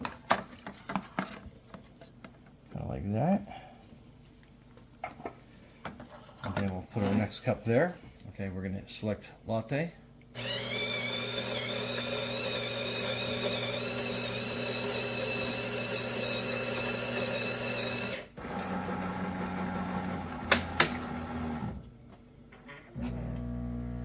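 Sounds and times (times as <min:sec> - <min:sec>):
espresso machine motor hum: 0:10.4 - 0:21.8, 0:23.0 - 0:24.0.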